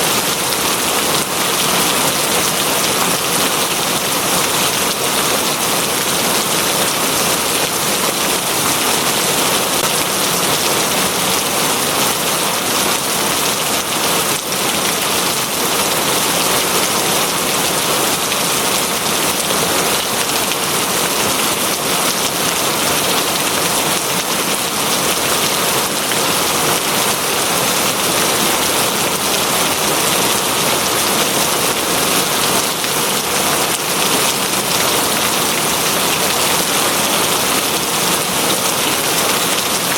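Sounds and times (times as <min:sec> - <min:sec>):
heavy rain falling: 0:00.0 - 0:39.9.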